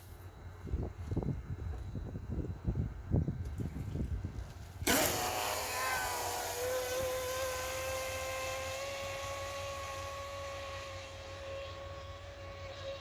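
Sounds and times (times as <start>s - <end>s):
speedboat motor high whine: 4.8s - 13.0s.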